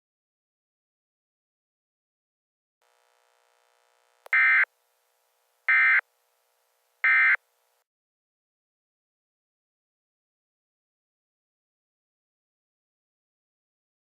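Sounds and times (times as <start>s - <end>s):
faint hum: 2.8s - 7.8s
short electronic data bursts: 4.3s - 4.7s, 5.7s - 6.1s, 7.0s - 7.4s.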